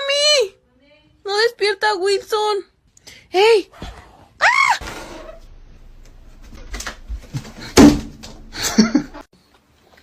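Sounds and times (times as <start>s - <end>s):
voice: 0.0s - 2.7s.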